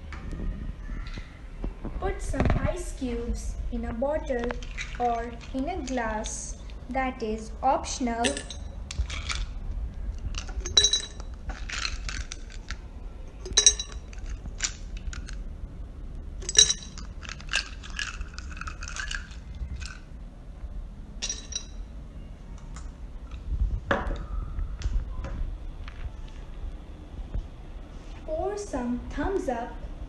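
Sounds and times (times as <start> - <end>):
ice cubes clinking in bottle: 4.6 - 6.4, 10.3 - 12.8, 13.4 - 15.4, 16.4 - 20.0, 21.2 - 21.7.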